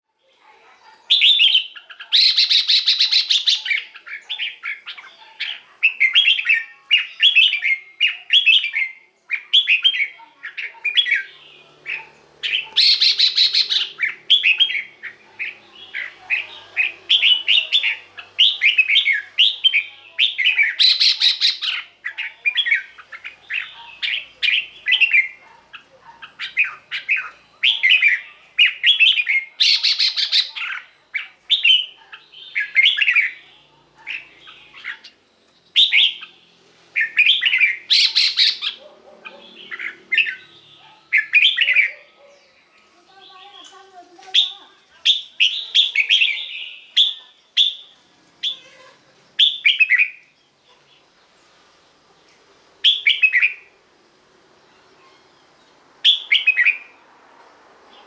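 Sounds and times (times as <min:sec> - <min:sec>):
bird whistled phrases: 0:01.1 - 0:33.4, 0:35.8 - 0:36.3, 0:37.0 - 0:38.8, 0:39.4 - 0:42.1, 0:44.2 - 0:50.3, 0:52.8 - 0:53.7, 0:56.1 - 0:56.9
harsh bird call burst: 0:11.4 - 0:15.0, 0:15.8 - 0:21.9, 0:26.4 - 0:30.8, 0:37.0 - 0:38.8.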